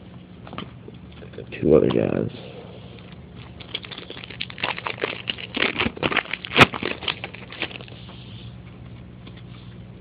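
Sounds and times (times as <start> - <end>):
cards rustling and crackling: 3.5 - 8.2.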